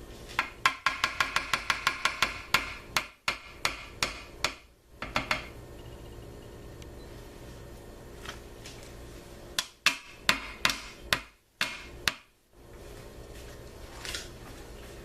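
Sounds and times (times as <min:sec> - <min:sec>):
utensil knocking against dish: 0:00.4 - 0:05.5.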